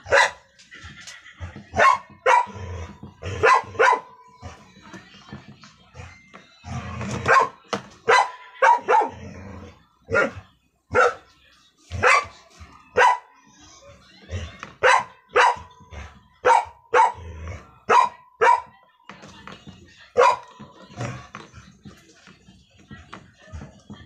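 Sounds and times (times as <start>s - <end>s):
dog barking: 0.0s - 0.5s, 1.8s - 2.6s, 3.2s - 4.2s, 7.2s - 9.2s, 10.1s - 11.3s, 11.9s - 12.4s, 13.0s - 13.3s, 14.8s - 15.8s, 16.4s - 18.8s, 20.2s - 20.6s.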